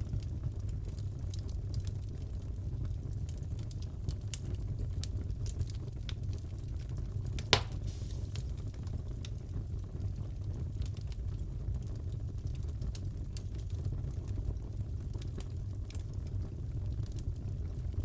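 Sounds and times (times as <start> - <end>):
fire low rumble: 0.0 - 18.0
wood fire crackling: 0.0 - 18.0
loud fire pop: 7.4 - 8.7.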